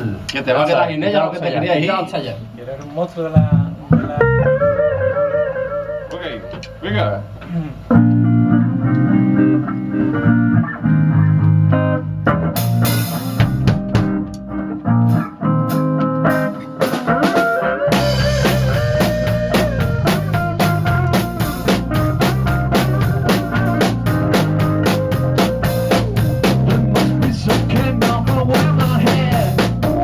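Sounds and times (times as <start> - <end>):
bass guitar: 3.4 - 30.0
electric guitar: 3.5 - 30.0
held lead guitar line: 3.6 - 30.0
drums and cymbals: 12.6 - 14.2, 15.1 - 30.0.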